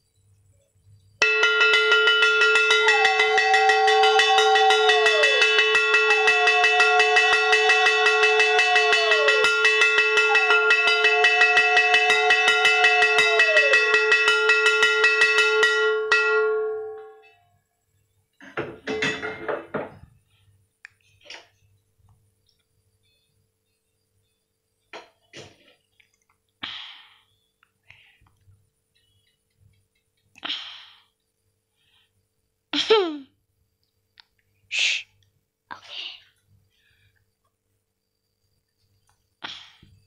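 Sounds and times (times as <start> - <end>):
conch shell blown: 1.2 - 17.4.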